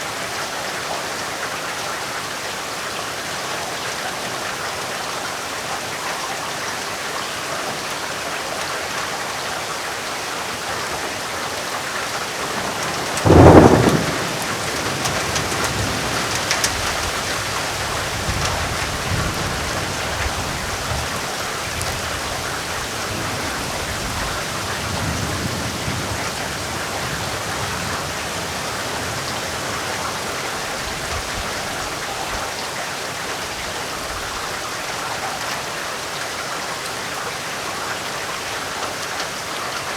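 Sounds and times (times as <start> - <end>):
heavy rain: 0.0 - 39.9
thunder crack and rumble: 12.1 - 32.0.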